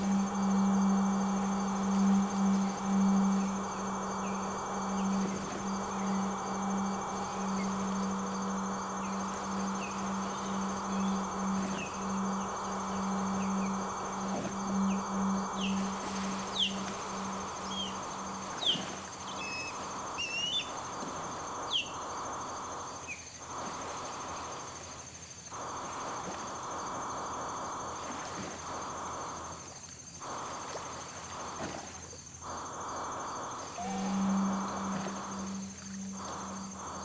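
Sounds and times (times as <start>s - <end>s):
pulsing low tone: 0.0s - 22.9s, 32.5s - 37.0s
buzzing synthesizer drone: 0.0s - 37.0s.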